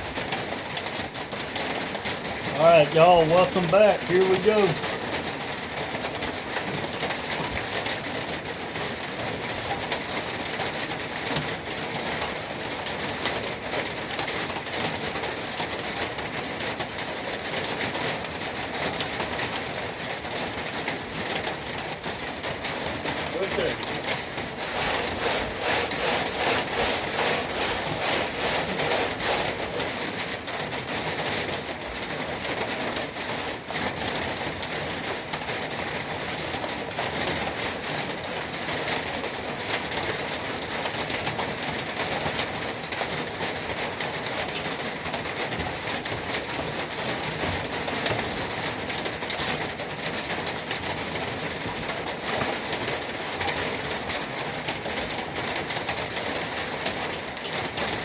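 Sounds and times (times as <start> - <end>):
sanding metal toolbox: 24.4 - 30.2.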